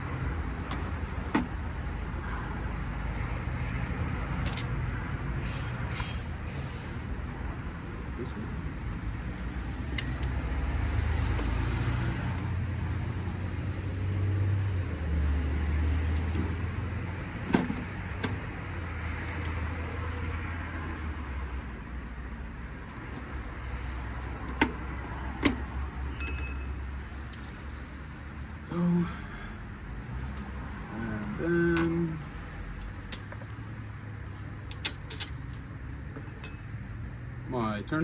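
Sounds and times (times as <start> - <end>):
motor vehicle rumbling: 0.0 - 38.0
tools rattling: 23.9 - 26.8.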